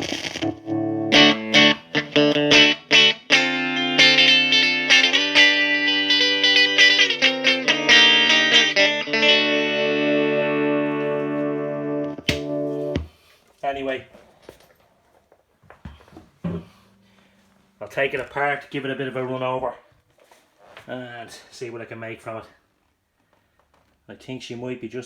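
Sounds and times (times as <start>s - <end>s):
electric guitar chords: 0.0s - 13.1s.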